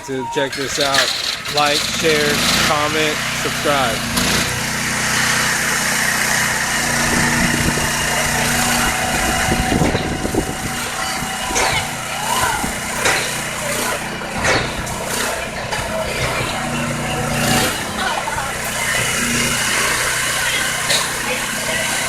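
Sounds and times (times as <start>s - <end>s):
engine running steadily: 0.0s - 22.0s
sharp knocks: 14.4s - 14.8s.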